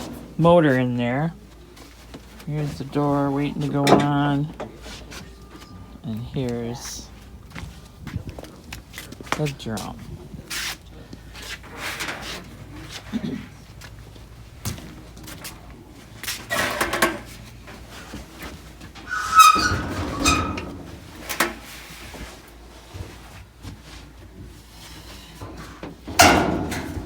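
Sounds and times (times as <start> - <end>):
metal scraping: 19.0 - 21.7.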